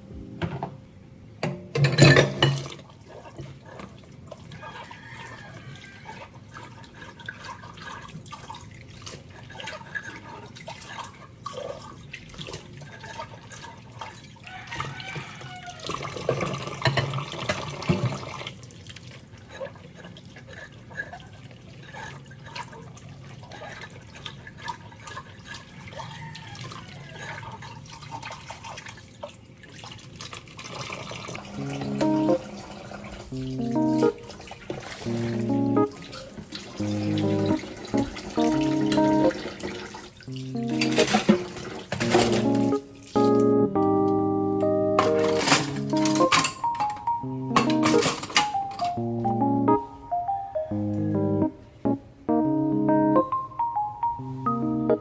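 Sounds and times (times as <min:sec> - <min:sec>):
dishes clinking and knocking: 0:01.4 - 0:02.8, 0:40.8 - 0:42.6, 0:45.0 - 0:49.0
tap water running into sink: 0:01.8 - 0:43.5
splashing water: 0:01.9 - 0:43.6.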